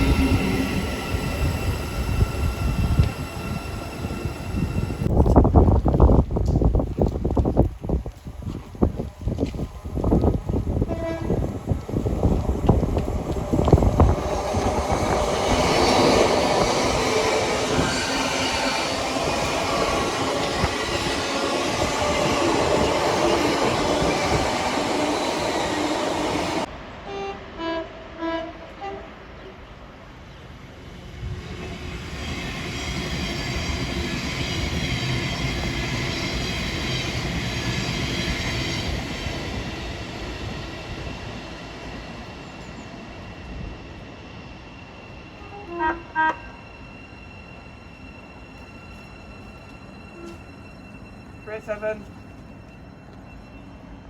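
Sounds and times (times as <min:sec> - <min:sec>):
train passing with steady whine: 0:00.0 - 0:54.0
train wheel and rail noise: 0:00.0 - 0:54.0
train horn toots: 0:10.8 - 0:11.6, 0:27.0 - 0:29.5, 0:45.4 - 0:46.6.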